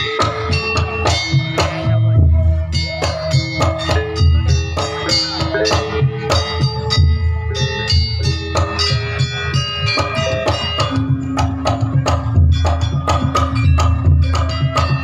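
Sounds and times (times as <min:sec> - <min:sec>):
drums: 0:00.0 - 0:15.0
gamelan music: 0:00.0 - 0:15.0.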